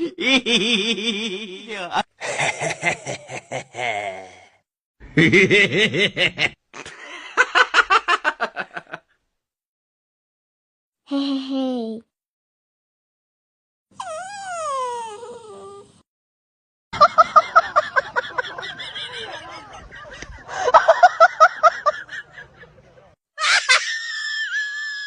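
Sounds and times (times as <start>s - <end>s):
dog whining: 14.0s - 16.0s.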